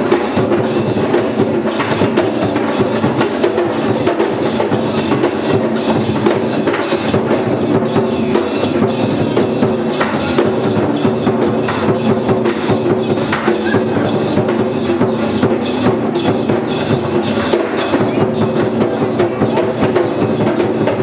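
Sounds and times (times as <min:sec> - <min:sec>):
group of drummers playing: 0:00.0 - 0:21.0.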